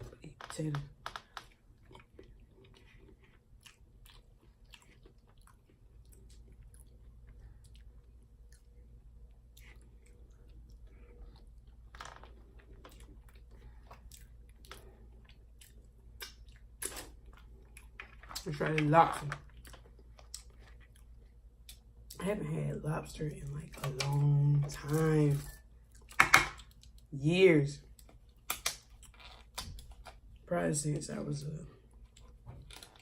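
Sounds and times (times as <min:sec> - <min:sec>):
person chewing food: 0:00.9 - 0:18.5, 0:19.1 - 0:22.2, 0:23.9 - 0:27.1, 0:27.9 - 0:30.4, 0:31.8 - 0:33.0.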